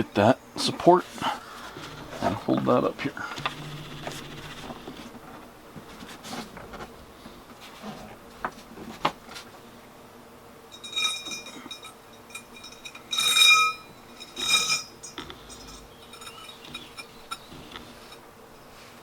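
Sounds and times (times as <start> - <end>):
metal scraping with ring: 10.7 - 18.2.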